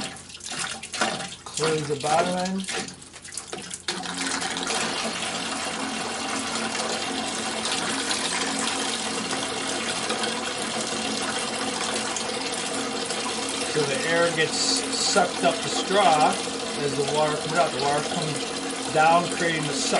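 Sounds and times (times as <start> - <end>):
water running into a bucket: 0.0 - 19.9.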